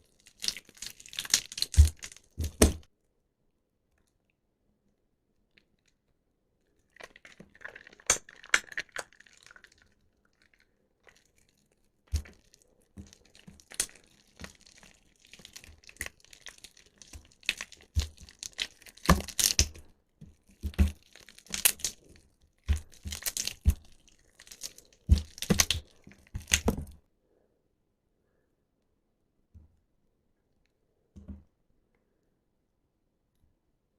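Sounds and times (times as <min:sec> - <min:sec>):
wet soap crunching squishes: 0:00.0 - 0:02.9, 0:06.7 - 0:27.0.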